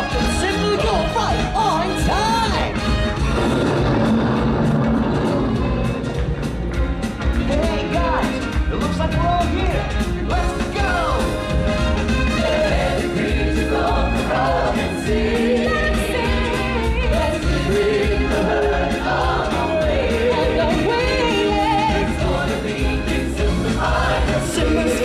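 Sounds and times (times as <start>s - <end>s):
band backing track with bass: 0.0s - 25.0s
choir-like stage singing: 10.3s - 25.0s.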